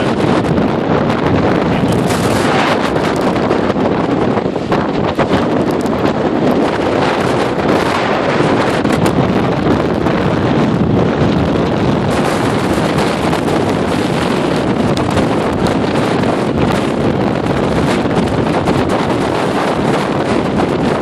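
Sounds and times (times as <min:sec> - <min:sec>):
wind buffeting microphone: 0:00.0 - 0:21.0.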